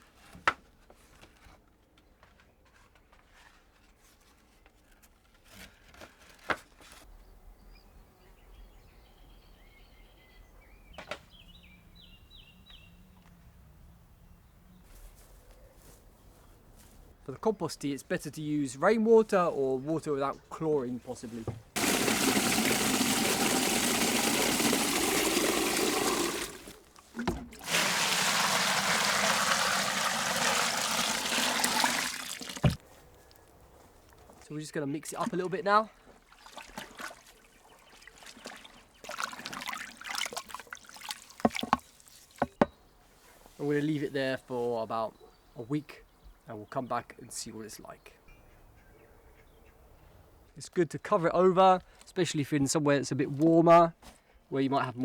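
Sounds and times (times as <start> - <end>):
rustling and handling noises: 0.0 - 7.1
water pouring into a bucket: 21.8 - 32.8, 35.1 - 42.6
faint bird chirps: 47.9 - 50.2.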